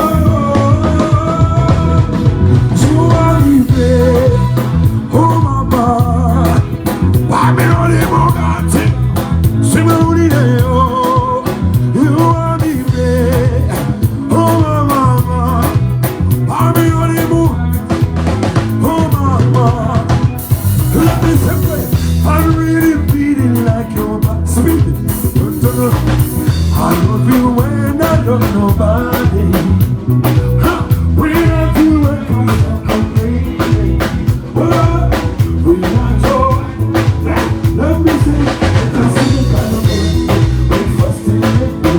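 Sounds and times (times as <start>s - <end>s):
bass: 0.0s - 41.9s
drum beat: 0.0s - 41.9s
melodic guitar lines: 0.0s - 41.9s.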